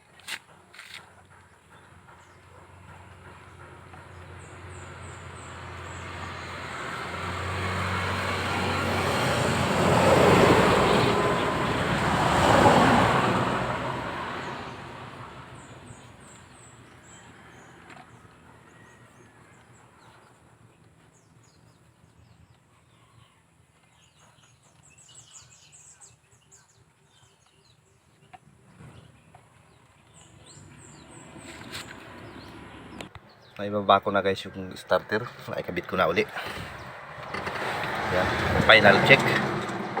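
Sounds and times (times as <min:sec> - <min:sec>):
birds chirping: 0:00.5 - 0:09.4, 0:10.0 - 0:39.9
vehicle passing by: 0:03.2 - 0:21.1, 0:28.7 - 0:33.2, 0:34.0 - 0:40.0.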